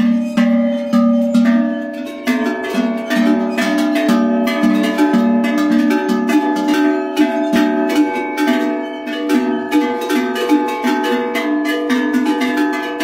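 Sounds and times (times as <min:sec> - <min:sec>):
metal livestock bells clanking: 0:00.0 - 0:13.0.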